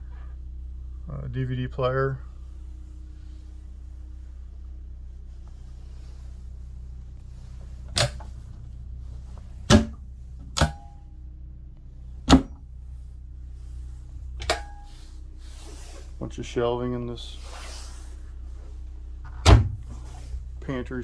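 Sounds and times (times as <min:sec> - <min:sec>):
steady low hum: 0:00.0 - 0:21.0
cabinet doors clicking and knocking: 0:09.7 - 0:10.0, 0:12.3 - 0:12.6.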